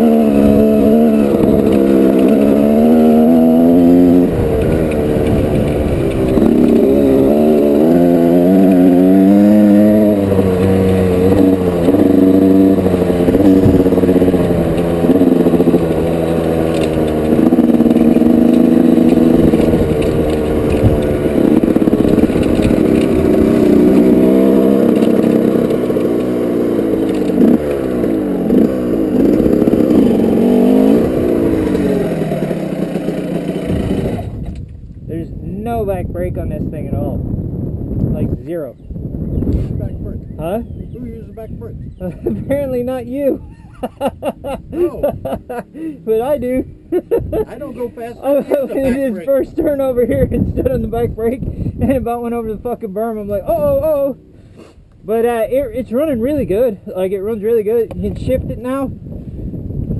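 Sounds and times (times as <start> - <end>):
two-stroke motorcycle engine revving: 0.0 - 59.9.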